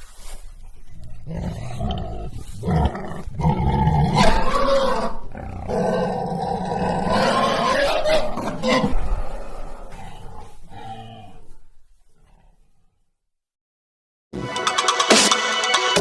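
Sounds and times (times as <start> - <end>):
animal squealing: 4.0 - 5.3, 7.0 - 9.1.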